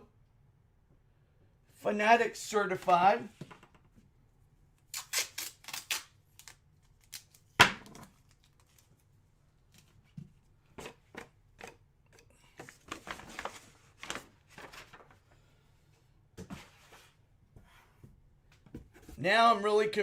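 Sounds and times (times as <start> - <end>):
packaging crinkling and rustling: 12.6 - 15.2.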